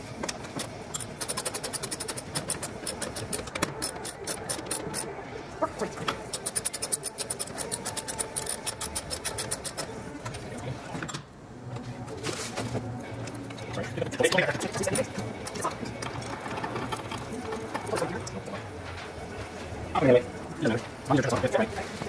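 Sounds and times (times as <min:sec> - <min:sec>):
rapid mechanical clicking: 0:00.2 - 0:05.1, 0:06.1 - 0:10.0.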